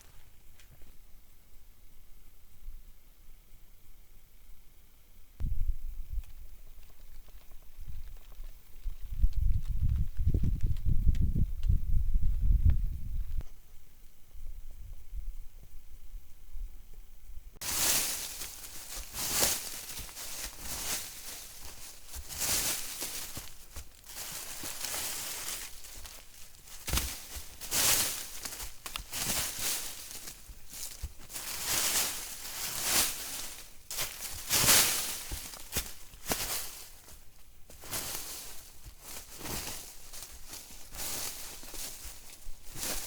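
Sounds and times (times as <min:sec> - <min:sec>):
footsteps crunching through dry leaves: 0:17.6 - 0:43.0.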